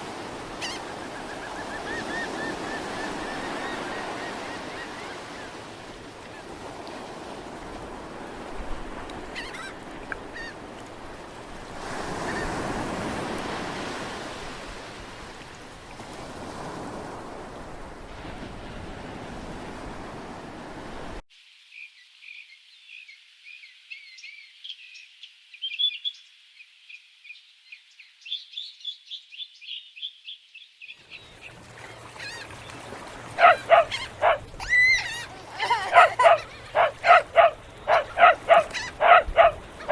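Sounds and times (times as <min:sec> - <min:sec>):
surf washing in: 0:00.0 - 0:21.2, 0:31.2 - 0:39.9
bird calls: 0:00.5 - 0:05.7, 0:31.1 - 0:39.9
animal calls: 0:33.4 - 0:39.9
high bird chirping: 0:33.4 - 0:39.9.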